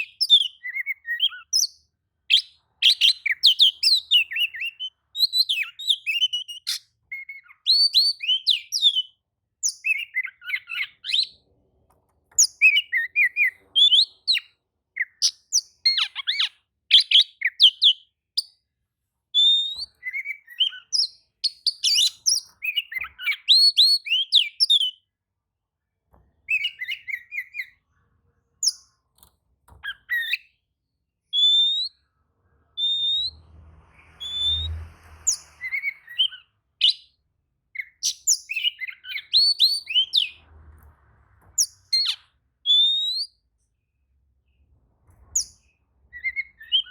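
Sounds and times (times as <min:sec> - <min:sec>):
bird singing whistles and trills: 0:00.0 - 0:11.4, 0:12.4 - 0:18.6, 0:19.4 - 0:25.0, 0:26.5 - 0:27.8, 0:29.8 - 0:30.5, 0:31.3 - 0:32.0, 0:32.8 - 0:40.4, 0:41.6 - 0:43.5, 0:45.3 - 0:46.9.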